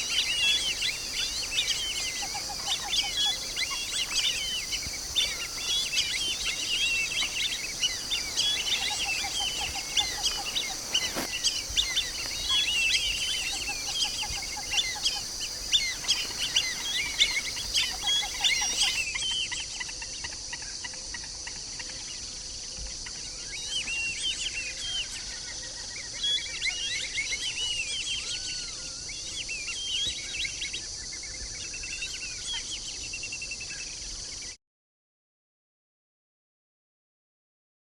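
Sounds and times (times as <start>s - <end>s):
ducks whistling: 0.0s - 19.1s.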